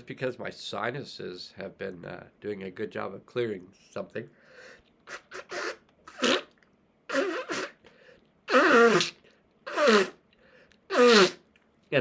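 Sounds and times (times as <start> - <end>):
person blowing nose: 5.1 - 7.9, 8.5 - 10.2, 10.9 - 11.5.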